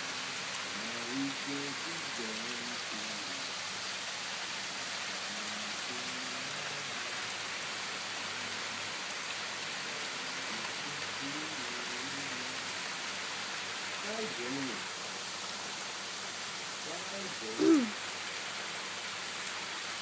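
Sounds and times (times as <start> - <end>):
heavy rain falling: 0.0 - 20.0
faint voices talking: 16.9 - 18.0.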